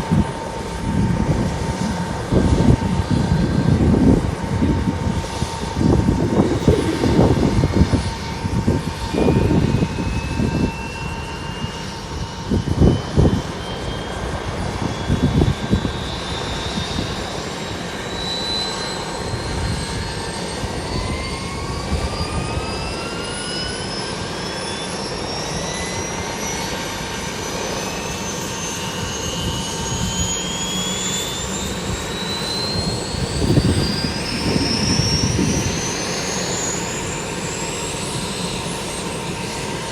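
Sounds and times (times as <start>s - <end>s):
gusty low rumbling: 0.0s - 17.9s, 32.8s - 36.3s
helicopter turbine whine: 0.0s - 39.9s
steady high tone: 4.5s - 23.2s.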